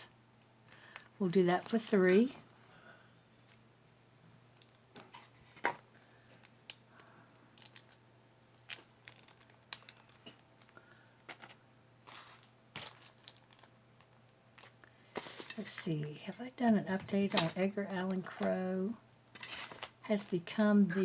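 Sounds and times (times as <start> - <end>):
soft rustles: 11.3 - 16.4.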